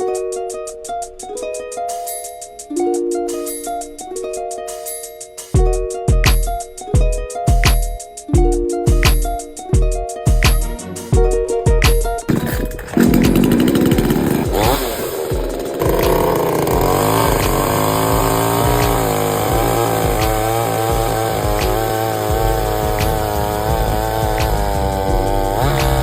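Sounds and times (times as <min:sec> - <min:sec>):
chainsaw engine running: 0:12.3 - 0:26.0.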